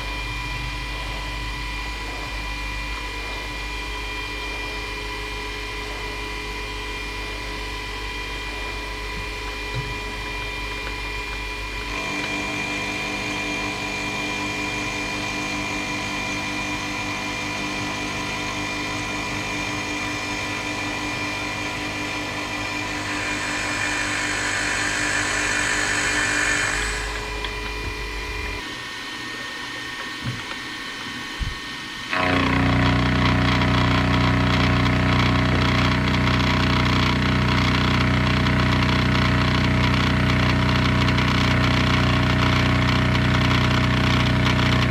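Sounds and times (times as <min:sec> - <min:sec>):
loud machine running: 0:00.0 - 0:30.5, 0:31.4 - 0:44.9
machine tool motor humming: 0:08.6 - 0:28.7, 0:32.1 - 0:44.9
hissing cutting noise: 0:19.2 - 0:28.6.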